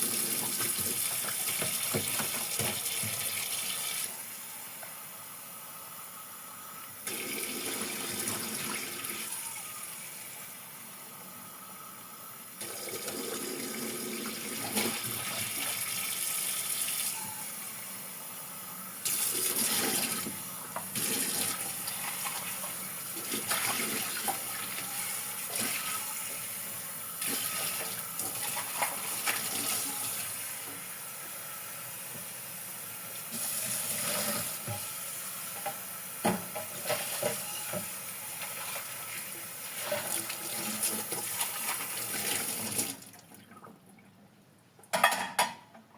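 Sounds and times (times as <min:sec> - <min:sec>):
tap water running into sink: 0:00.0 - 0:04.1
dishes clinking: 0:44.9 - 0:45.7.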